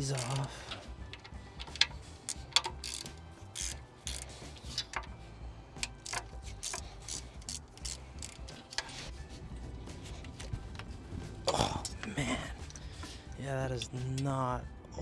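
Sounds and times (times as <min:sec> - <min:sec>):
metal tool clicks: 0:00.0 - 0:05.2, 0:05.8 - 0:09.1
short scraping rasps: 0:01.6 - 0:05.1, 0:05.8 - 0:09.1.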